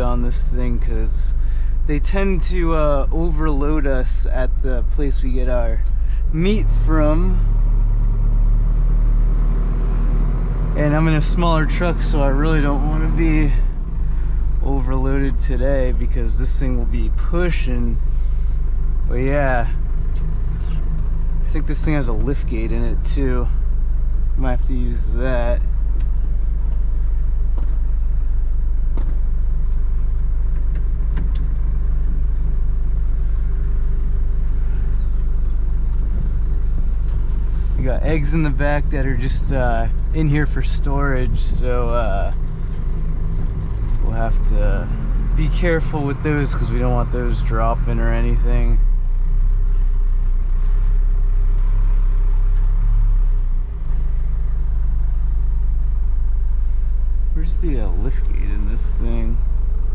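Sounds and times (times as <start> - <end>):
truck idling: 0.0 - 59.9.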